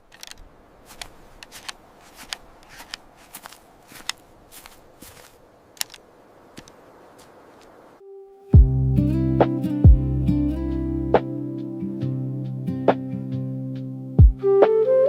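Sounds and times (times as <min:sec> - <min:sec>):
footsteps on a trail: 0:00.0 - 0:07.9.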